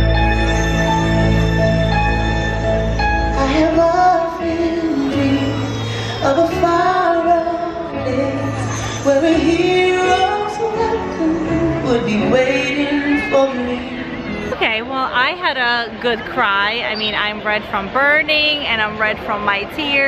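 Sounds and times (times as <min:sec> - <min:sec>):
music with sustained bass: 0:00.0 - 0:12.6.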